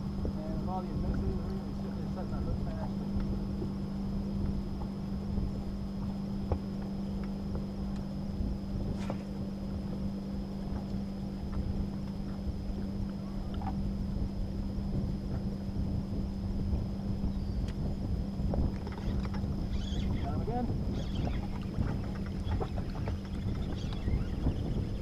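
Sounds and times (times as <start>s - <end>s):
boat motor humming: 0.0s - 25.0s.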